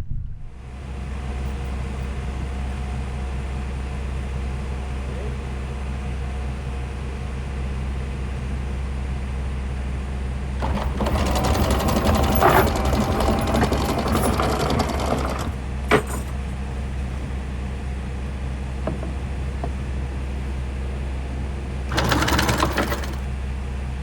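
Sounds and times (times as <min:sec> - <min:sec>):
steady low hum: 0:00.0 - 0:24.0
anchor chain rattling: 0:10.6 - 0:16.6, 0:21.9 - 0:23.3.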